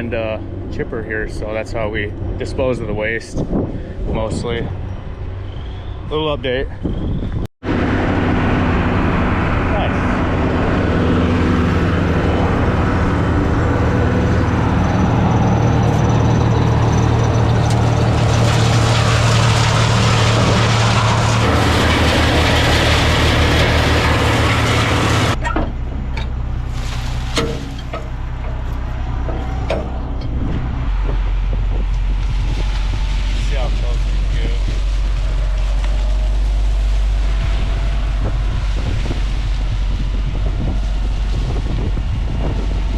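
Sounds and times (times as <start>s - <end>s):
heavy machinery engine humming: 7.6s - 42.9s.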